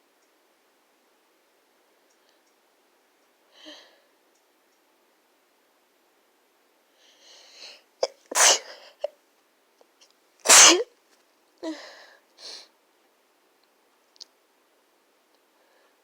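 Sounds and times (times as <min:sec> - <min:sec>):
person sneezing: 0:08.0 - 0:09.0, 0:10.5 - 0:10.9.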